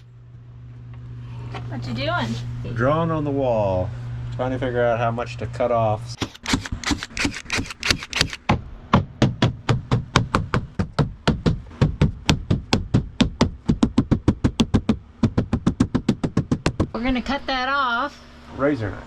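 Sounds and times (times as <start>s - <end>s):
rapid even knocking: 6.2s - 17.0s.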